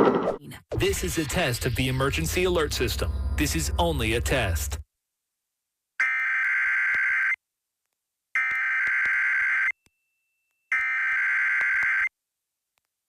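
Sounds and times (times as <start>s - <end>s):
warbling two-tone data bursts: 0.7s - 4.8s.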